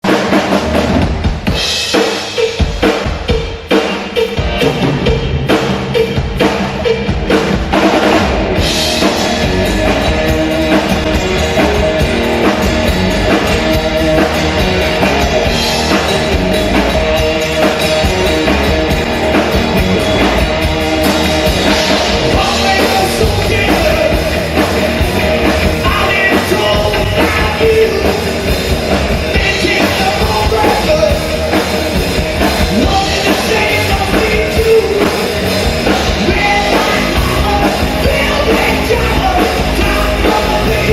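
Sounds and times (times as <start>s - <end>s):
drum kit: 0.0s - 40.9s
loud rock music: 0.0s - 40.9s
person singing: 21.7s - 24.7s, 25.6s - 28.7s, 29.3s - 31.7s, 32.6s - 40.9s.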